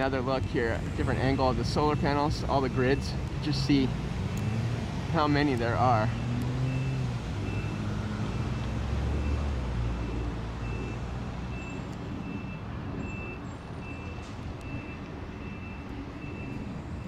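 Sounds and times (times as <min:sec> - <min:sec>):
truck engine rumble: 0:00.0 - 0:17.0
backup alarm beeping: 0:06.1 - 0:17.0.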